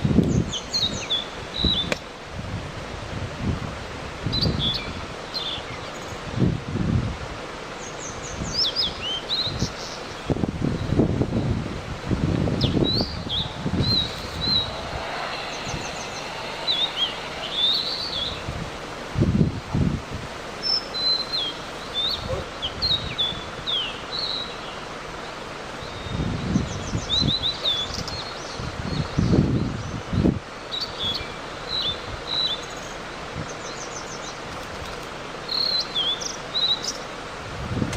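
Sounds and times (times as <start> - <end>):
low rumbles: 12.0 - 20.4
bird chirps whistles and trills: 12.6 - 18.5.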